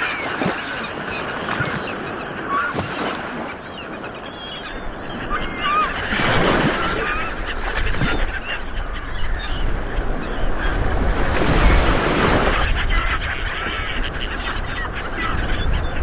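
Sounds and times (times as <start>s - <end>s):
high bird calls: 0.0s - 11.8s
ocean waves breaking: 0.0s - 16.0s.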